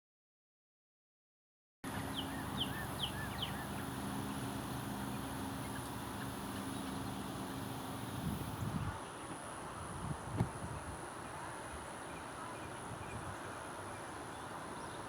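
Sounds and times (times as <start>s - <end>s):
low engine-like hum: 1.8s - 10.0s
bird calls: 2.0s - 8.1s.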